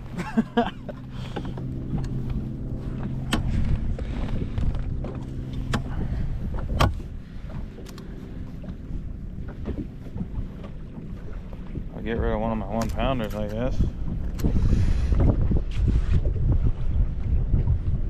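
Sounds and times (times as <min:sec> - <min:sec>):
electric boat motor humming: 0:00.0 - 0:15.6
knocks and clicks on boat: 0:00.0 - 0:16.5.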